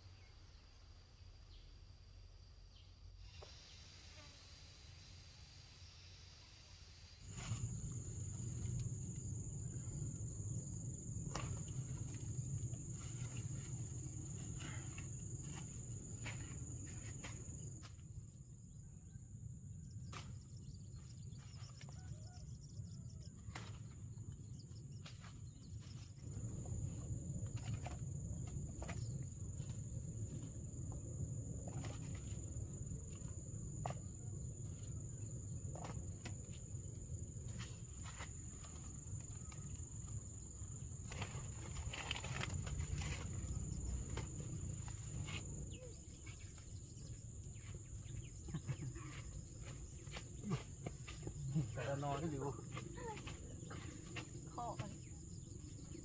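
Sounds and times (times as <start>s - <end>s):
insects trilling: 0.0s - 56.0s
low rumble: 26.2s - 36.1s.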